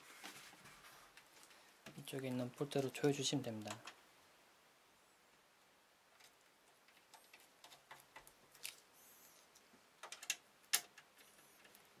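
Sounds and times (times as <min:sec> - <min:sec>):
faint clicks and taps: 0:06.2 - 0:08.8.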